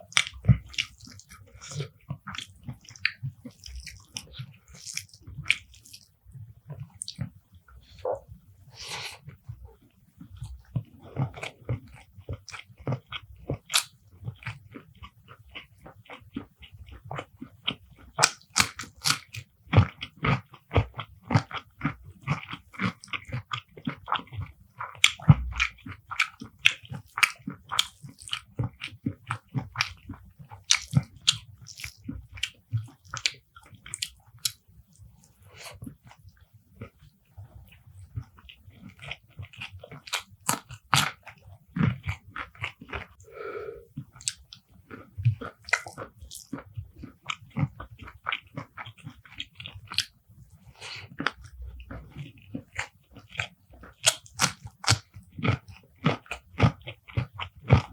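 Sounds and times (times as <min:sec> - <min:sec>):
wet chewing with crunches: 0:00.0 - 0:57.9.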